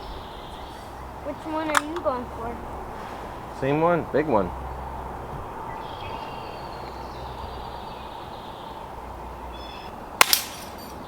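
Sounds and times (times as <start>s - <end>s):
faint bird chirps: 5.6s - 10.1s
pellet gun cracks: 10.2s - 10.9s.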